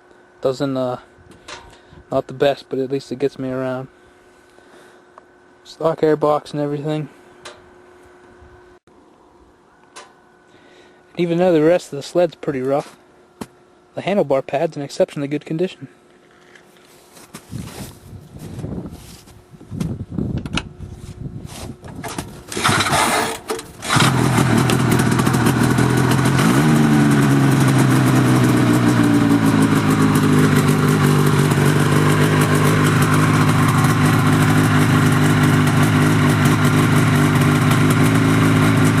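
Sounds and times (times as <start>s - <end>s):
snowmobile engine starting and running: 21.9s - 39.0s.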